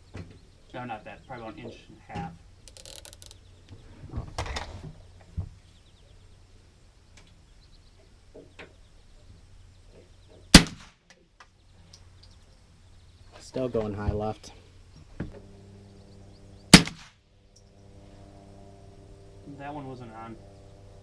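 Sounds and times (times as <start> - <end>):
rifle shot with echo: 10.5 - 11.0, 16.7 - 17.2.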